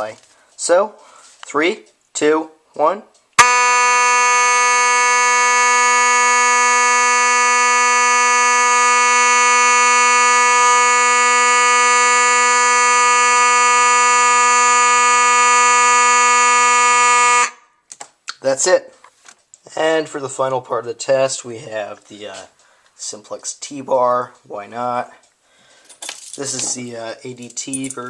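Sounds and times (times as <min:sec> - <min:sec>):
fire alarm horn steady tone: 0:03.4 - 0:17.7.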